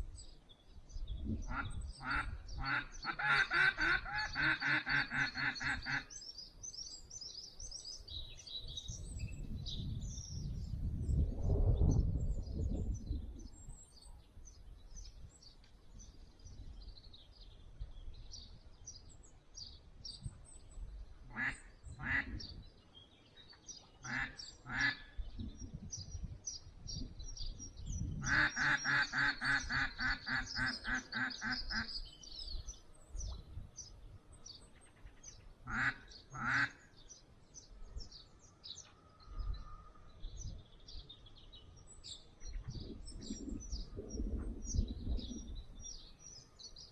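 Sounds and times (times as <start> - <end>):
songbirds chirping: 0.0 - 46.9
duck call quacks: 1.5 - 6.0, 35.7 - 36.8.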